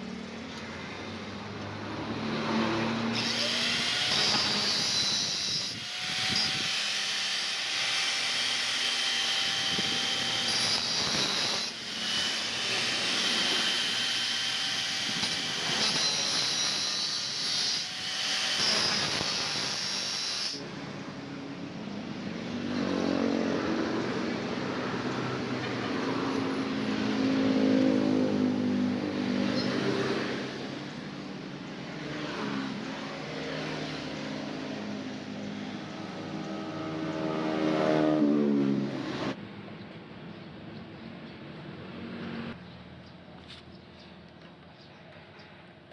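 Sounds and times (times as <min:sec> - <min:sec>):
power tool cutting steel: 0:02.4 - 0:20.7.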